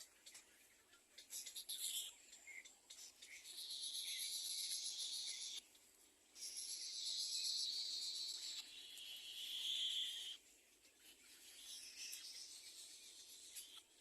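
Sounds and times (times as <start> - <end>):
nestlings begging calls: 6.4 - 10.4.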